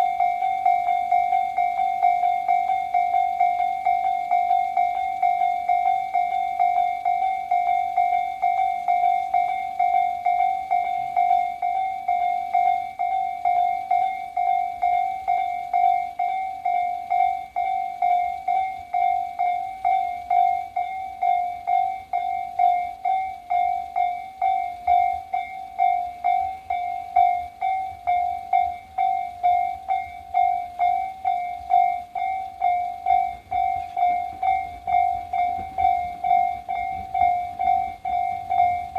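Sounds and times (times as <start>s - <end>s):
level crossing warning bell dinging: 0.0s - 38.9s.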